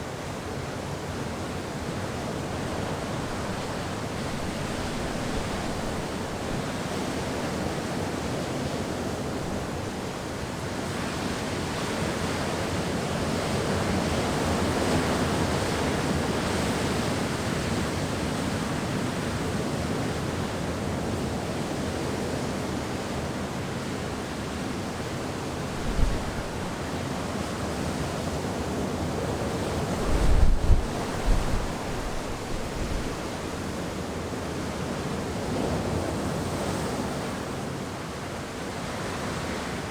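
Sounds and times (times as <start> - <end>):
wind gusts buffeting microphone: 25.7 - 27.0, 29.0 - 33.7.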